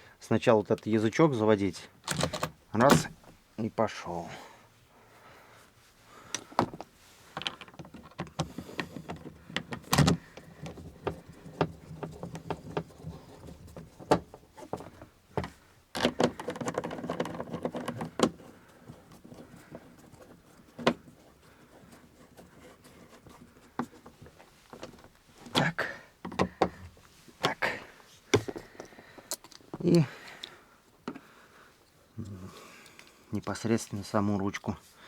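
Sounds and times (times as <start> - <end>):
scraping and rattling handling: 2.0 - 3.4, 6.3 - 27.6
plastic trim clicks and knocks: 7.4 - 18.4.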